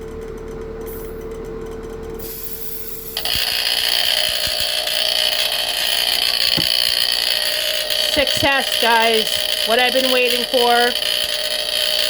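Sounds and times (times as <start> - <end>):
smoke alarm buzzing horn: 2.2 - 12.0
steady hum: 2.2 - 12.0.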